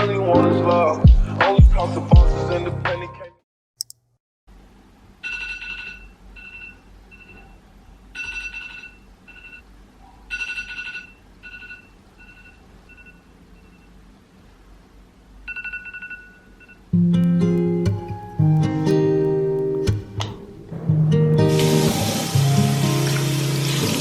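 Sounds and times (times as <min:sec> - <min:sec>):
phone alarm beeping: 0:10.3 - 0:13.9.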